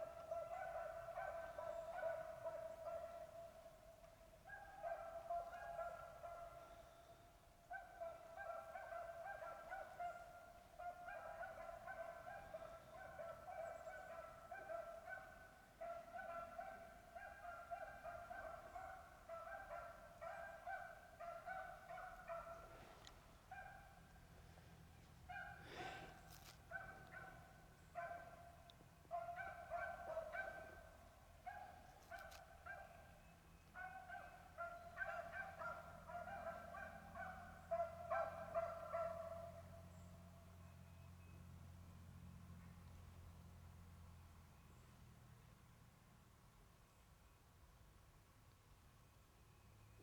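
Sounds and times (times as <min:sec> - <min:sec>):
distant hounds baying: 0:00.0 - 0:03.7, 0:04.4 - 0:07.0, 0:07.7 - 0:40.8.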